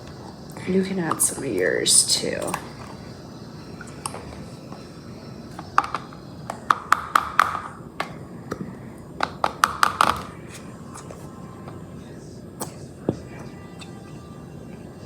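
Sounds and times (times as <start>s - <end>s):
glue bottles clicking and tapping: 5.6s - 10.3s.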